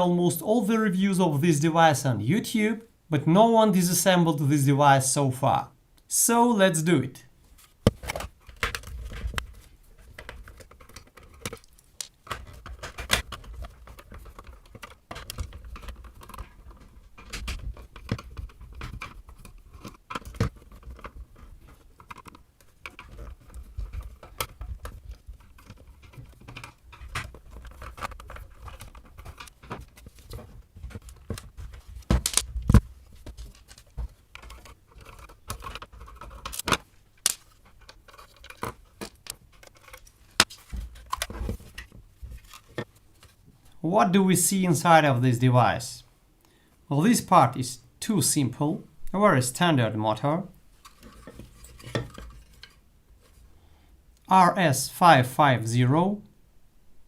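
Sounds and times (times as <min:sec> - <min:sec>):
plastic parts clicking and tapping: 0:07.6 - 0:43.4, 0:50.8 - 0:52.8.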